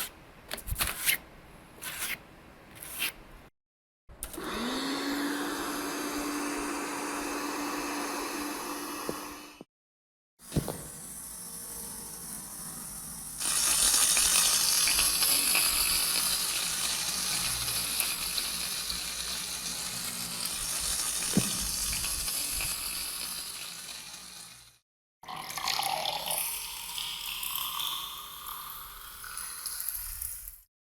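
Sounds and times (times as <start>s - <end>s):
water running from tap: 13.4s - 24.7s.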